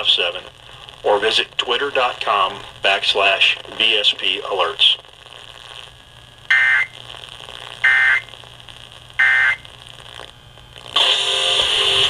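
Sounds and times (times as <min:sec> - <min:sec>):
radio music: 0:00.0 - 0:05.9, 0:10.8 - 0:12.0
buzzy data tone bursts: 0:01.8 - 0:12.0.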